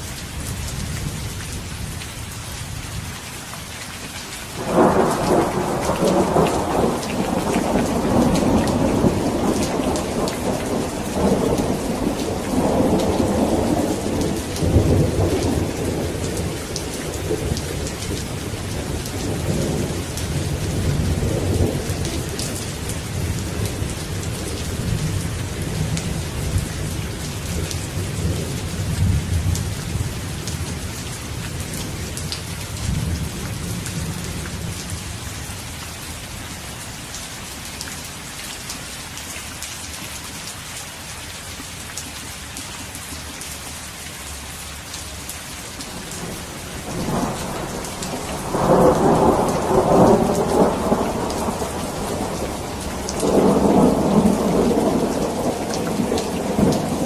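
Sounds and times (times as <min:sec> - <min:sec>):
steady rain: 0:00.0 - 0:57.0
thunder rumbling: 0:04.6 - 0:30.8, 0:45.9 - 0:57.0.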